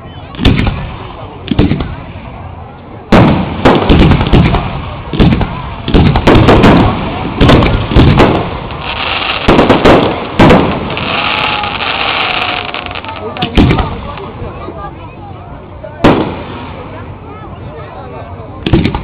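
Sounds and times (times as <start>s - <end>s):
fireworks bursting with loud bangs: 0.4s - 2.2s, 3.1s - 14.3s, 16.0s - 17.0s, 18.6s - 19.0s.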